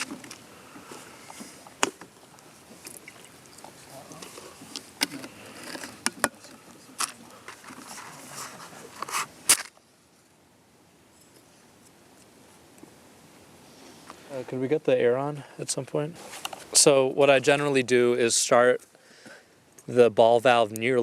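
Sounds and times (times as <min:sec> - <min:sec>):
faint voices: 0:03.6 - 0:09.2.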